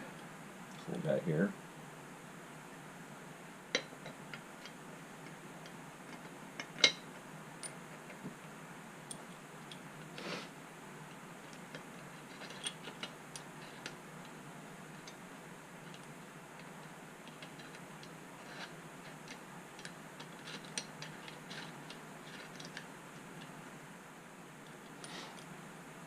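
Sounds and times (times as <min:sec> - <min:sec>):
metal parts clicking and tapping: 0:11.7 - 0:14.0, 0:15.9 - 0:23.5.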